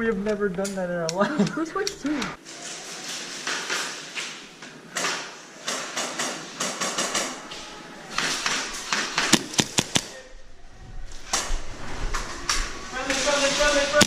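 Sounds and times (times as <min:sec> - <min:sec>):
airsoft gun shots: 0:08.5 - 0:10.1.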